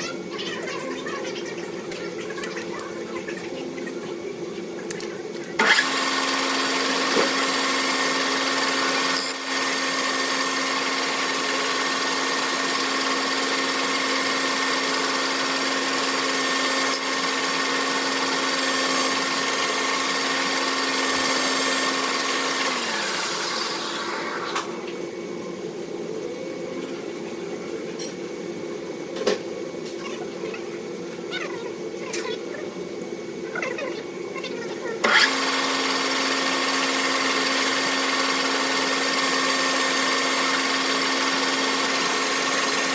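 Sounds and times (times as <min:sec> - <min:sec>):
machine tool running: 0:05.6 - 0:24.8, 0:35.0 - 0:42.9
machine spinning down: 0:05.6 - 0:25.0, 0:35.0 - 0:42.9.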